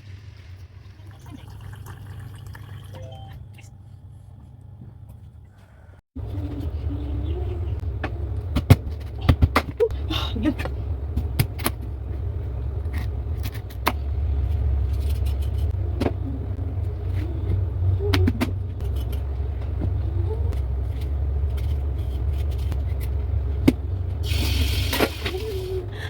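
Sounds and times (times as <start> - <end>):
steady low rumble: 6.2 - 26.0.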